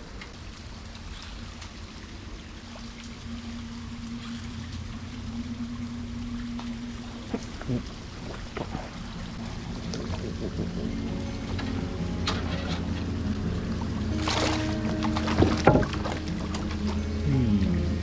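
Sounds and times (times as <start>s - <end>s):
low rumble of water: 0.0s - 18.0s
steady hum: 0.0s - 18.0s.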